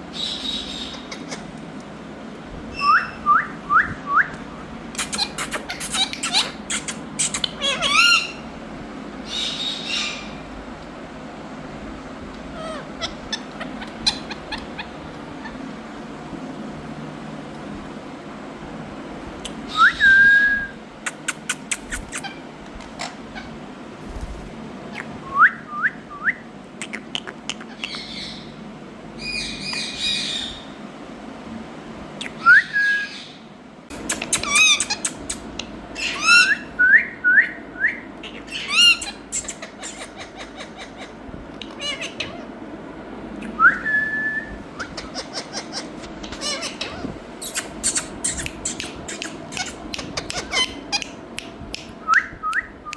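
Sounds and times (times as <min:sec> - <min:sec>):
parrot squawking: 0:00.2 - 0:01.5, 0:02.7 - 0:03.3, 0:05.0 - 0:08.5, 0:09.3 - 0:10.4, 0:12.5 - 0:15.7, 0:21.1 - 0:22.4, 0:26.9 - 0:28.5, 0:34.1 - 0:36.7, 0:38.2 - 0:42.5, 0:44.8 - 0:51.2
parrot whistling: 0:02.7 - 0:04.4, 0:36.0 - 0:41.0
parrot clicking: 0:21.1 - 0:22.4, 0:47.4 - 0:52.6.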